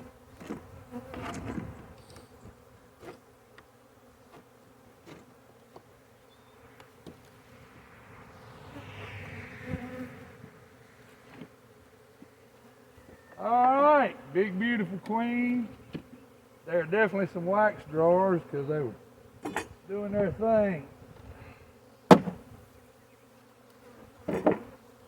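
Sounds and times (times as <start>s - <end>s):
bees buzzing: 0.0s - 24.9s
rushing noise: 6.6s - 11.9s.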